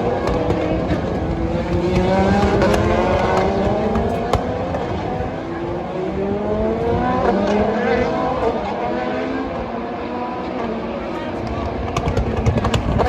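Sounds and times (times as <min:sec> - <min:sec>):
exhaust pops: 0:00.0 - 0:08.7, 0:11.4 - 0:13.0
race car engines accelerating: 0:00.0 - 0:13.0.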